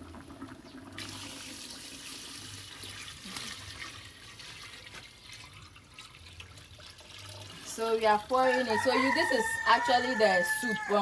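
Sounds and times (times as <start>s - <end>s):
liquid pouring and splashing: 0.0s - 8.3s.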